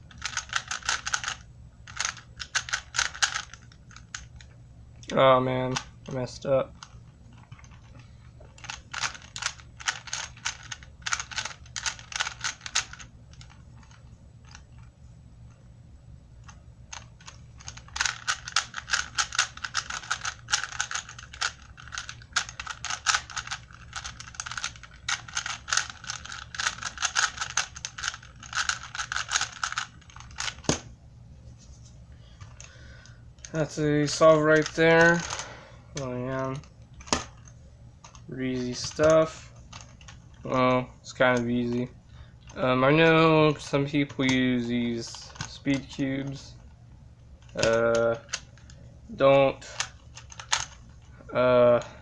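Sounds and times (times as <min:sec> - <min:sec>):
faint low hum: 0:00.0 - 0:52.0
puzzle cube clicking as turned: 0:00.1 - 0:04.5, 0:08.6 - 0:14.6, 0:16.9 - 0:30.8, 0:47.4 - 0:48.8, 0:49.8 - 0:50.8.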